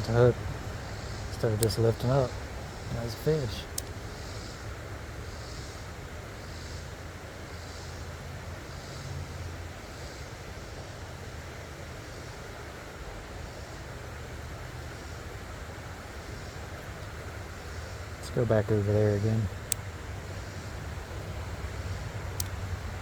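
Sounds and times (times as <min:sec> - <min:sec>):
wind buffeting microphone: 0:00.0 - 0:05.1
creek water rushing: 0:00.0 - 0:23.0
soft high hiss: 0:00.0 - 0:23.0.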